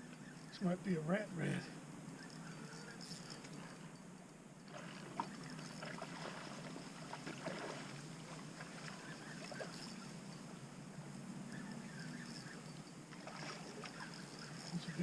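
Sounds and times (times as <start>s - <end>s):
water splashing: 4.6s - 10.1s, 13.1s - 15.0s.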